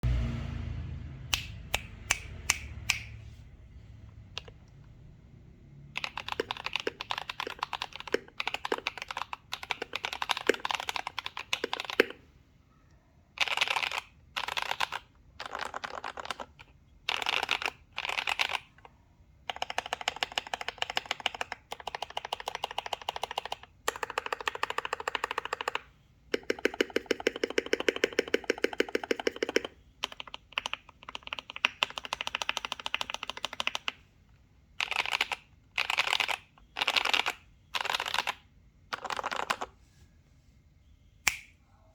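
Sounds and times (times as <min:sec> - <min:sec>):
mechanical keyboard typing: 0:05.9 - 0:12.2, 0:13.4 - 0:34.0, 0:34.8 - 0:39.7.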